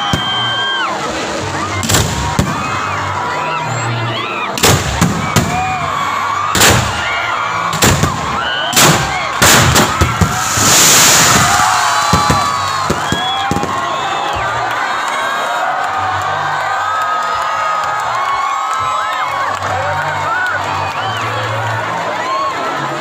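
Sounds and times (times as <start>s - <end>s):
crowd chatter and shouts: 0.0s - 23.0s
fireworks bangs: 6.5s - 7.1s, 7.7s - 13.9s
hissing crackle: 8.8s - 13.5s.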